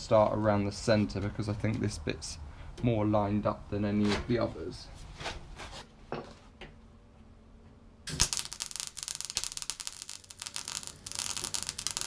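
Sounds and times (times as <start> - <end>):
welder arc crackling: 8.1 - 12.0.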